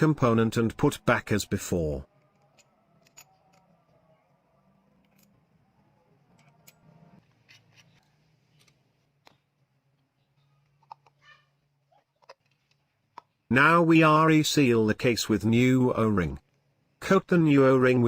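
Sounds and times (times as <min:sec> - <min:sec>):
metal parts clicking and tapping: 0:02.2 - 0:03.8.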